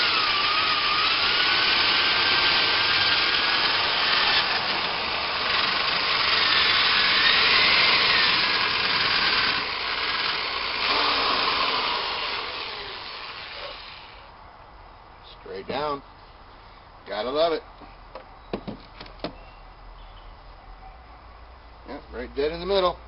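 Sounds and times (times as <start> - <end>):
power drill boring: 0.0 - 14.3.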